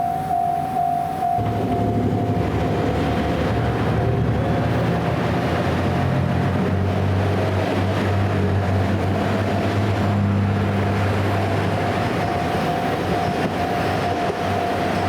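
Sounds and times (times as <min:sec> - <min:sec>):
thin high tone: 0:00.0 - 0:02.3
electric train rumbling past: 0:00.0 - 0:15.0.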